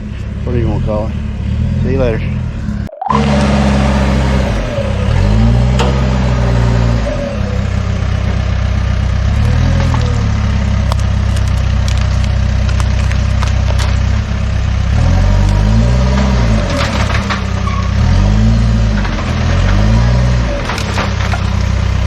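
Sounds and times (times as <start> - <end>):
diesel engine revving: 0.0 - 22.0.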